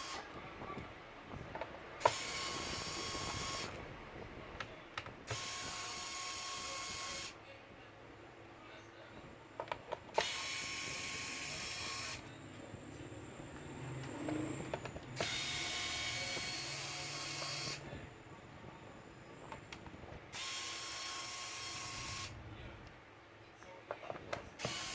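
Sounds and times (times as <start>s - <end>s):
electric screwdriver whirring: 0.0s - 0.3s, 2.0s - 3.8s, 5.3s - 7.4s, 10.1s - 12.3s, 14.0s - 17.9s, 20.3s - 22.4s, 24.6s - 24.9s
bit and screws clicking: 24.0s - 24.9s.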